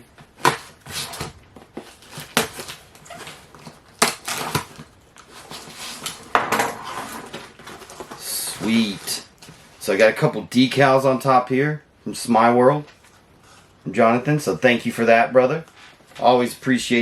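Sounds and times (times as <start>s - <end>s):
cardboard rustling: 0.0s - 10.0s.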